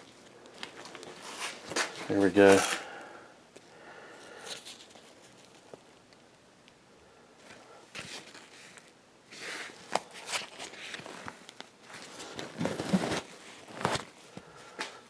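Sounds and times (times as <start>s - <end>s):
hands rustling and scraping: 7.4s - 15.0s.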